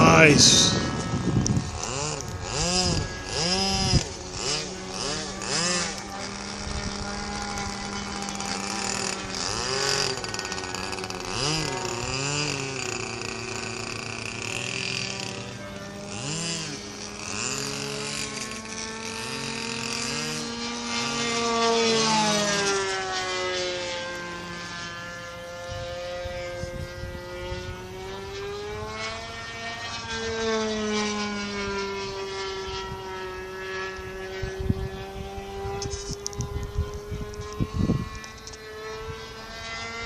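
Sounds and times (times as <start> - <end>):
wind buffeting microphone: 0.0 - 10.0, 25.7 - 29.0, 32.6 - 39.7
model airplane engine: 0.0 - 40.0.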